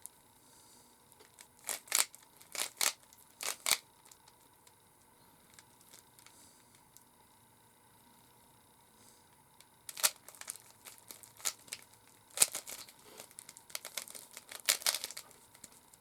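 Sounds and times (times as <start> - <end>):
puzzle cube plastic clicks: 1.3 - 3.8, 9.9 - 15.8.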